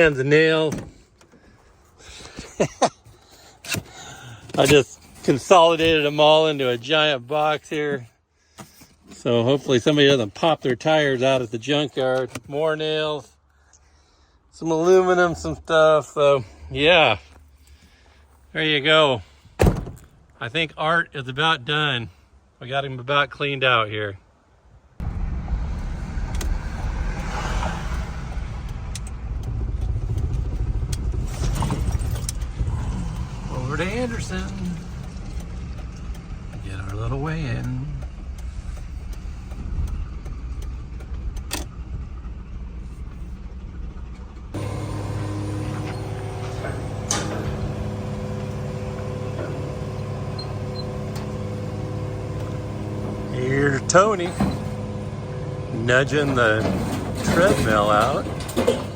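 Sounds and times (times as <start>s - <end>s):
vehicle rumbling: 0.0s - 58.9s
heavy engine idling: 25.0s - 58.9s
metallic clank: 56.2s - 58.9s.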